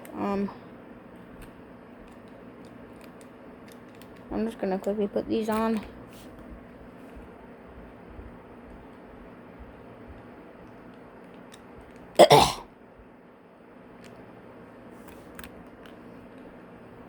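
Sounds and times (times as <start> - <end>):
person coughing: 12.2 - 12.7.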